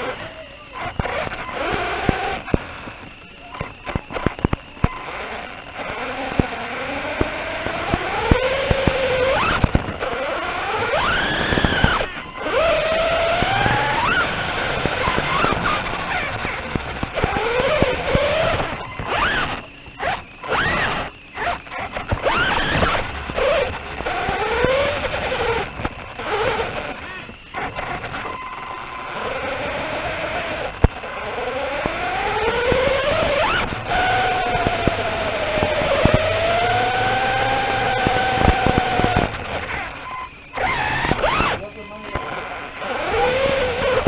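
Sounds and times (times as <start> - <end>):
small electric motor whining: 0.0 - 44.0.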